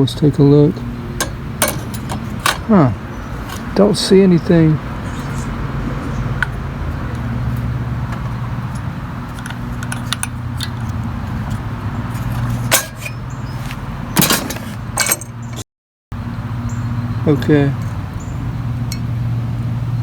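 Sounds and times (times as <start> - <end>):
sharp metallic clicks and clinks: 1.2 - 2.8, 8.7 - 11.0, 12.2 - 13.2, 14.2 - 15.6.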